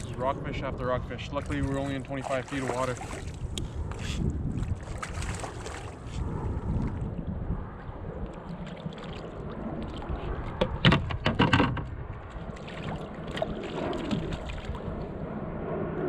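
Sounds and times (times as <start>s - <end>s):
wind rumbling on microphone: 0.0s - 16.0s
water sloshing against hull: 1.1s - 15.1s
sharp knocks and splashes: 1.4s - 6.2s, 8.4s - 14.9s.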